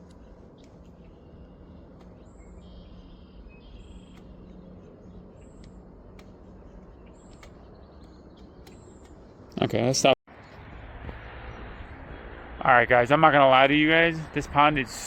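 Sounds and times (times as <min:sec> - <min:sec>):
small birds whistling: 0:00.0 - 0:09.5
low background rumble: 0:00.0 - 0:09.9
lower bird chirps: 0:00.0 - 0:12.0.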